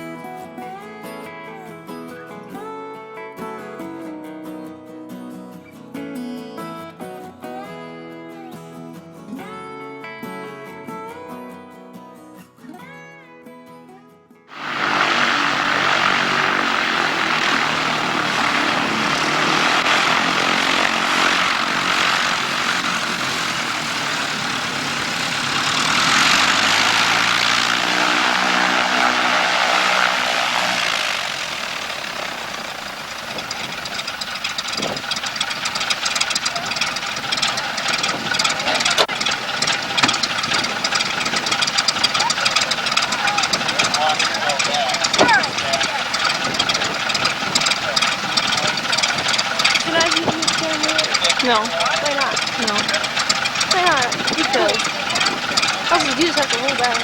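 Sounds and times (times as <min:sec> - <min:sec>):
loud rushing noise: 0:14.5 - 0:34.1
engine running: 0:14.5 - 0:57.0
fast irregular rattling: 0:14.5 - 0:57.0.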